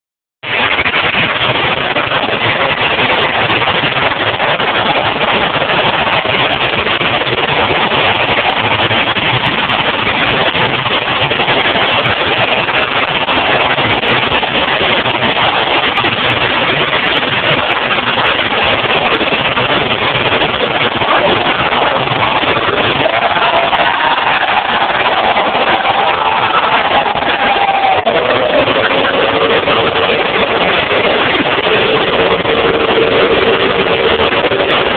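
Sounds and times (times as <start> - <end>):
car engines running loud: 0.4 - 34.9.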